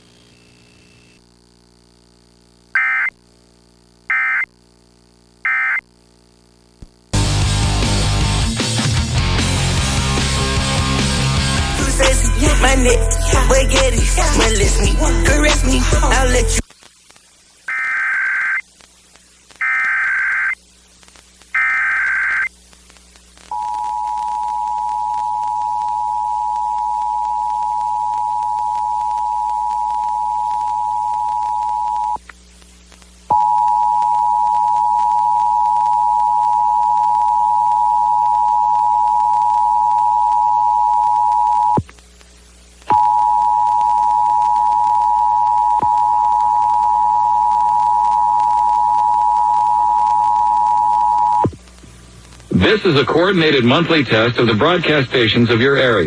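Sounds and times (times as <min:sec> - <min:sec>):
digital data bursts: 0:17.0 - 0:18.7, 0:19.6 - 0:20.6, 0:21.5 - 0:22.5.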